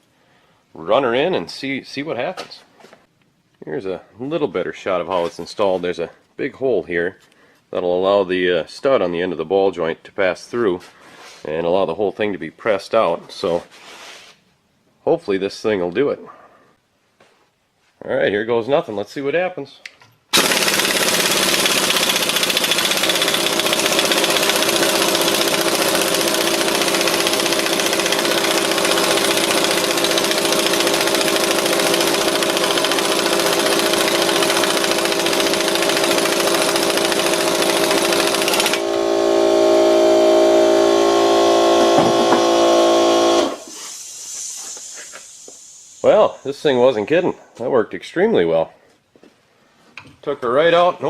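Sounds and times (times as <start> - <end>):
impact wrench hammering: 20.3 - 40.2, 40.9 - 43.7.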